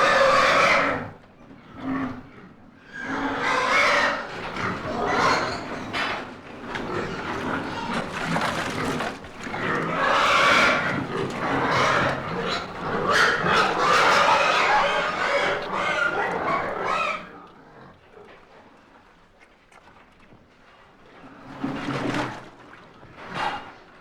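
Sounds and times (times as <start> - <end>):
pigs squealing and grunting: 0.0 - 1.1, 2.9 - 6.0, 6.8 - 17.4.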